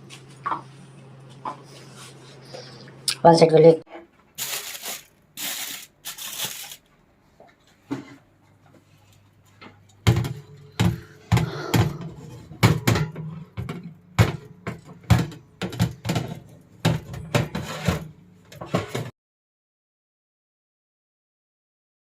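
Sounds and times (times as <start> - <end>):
kitchenware knocking and clattering: 10.0 - 19.1.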